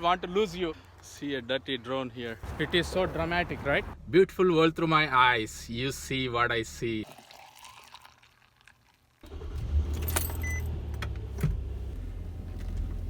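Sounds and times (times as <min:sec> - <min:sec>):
keys jangling: 0:10.0 - 0:10.6.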